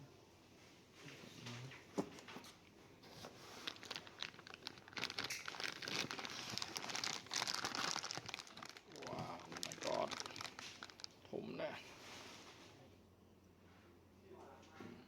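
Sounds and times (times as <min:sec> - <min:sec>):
packaging crinkling and rustling: 0:03.0 - 0:11.3.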